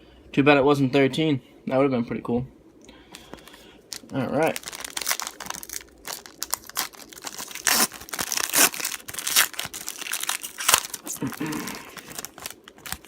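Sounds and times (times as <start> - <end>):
wrapper crinkling and tearing: 3.3 - 13.0.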